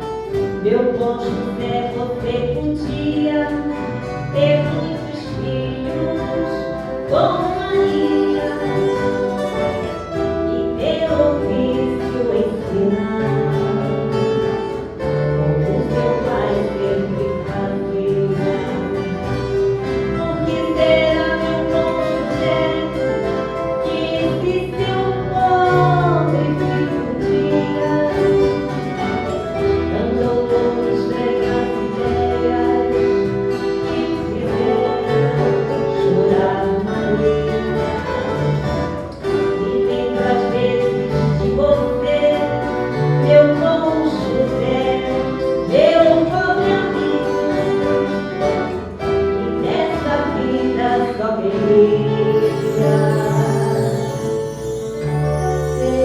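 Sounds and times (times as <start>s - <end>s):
guitars playing: 0.0s - 56.0s
voices singing sliding melodies: 0.3s - 56.0s.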